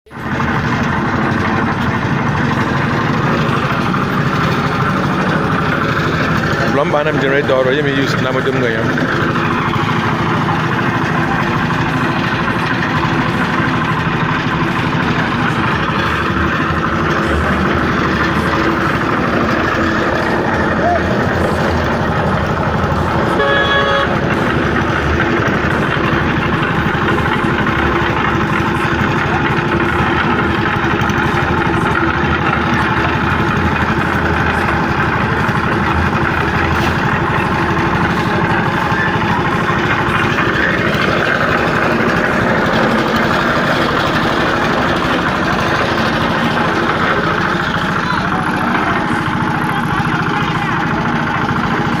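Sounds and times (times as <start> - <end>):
machine engine running: 0.1 - 52.0
short horn toot: 23.3 - 24.2.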